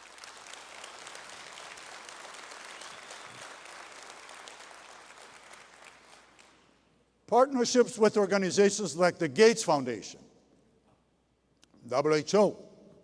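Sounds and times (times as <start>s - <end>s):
audience applauding: 0.0s - 6.7s.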